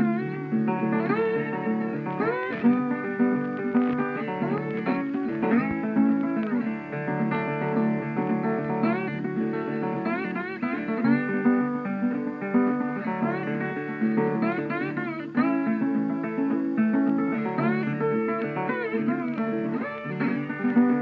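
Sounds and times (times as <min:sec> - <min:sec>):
acoustic guitar playing: 0:00.0 - 0:21.0.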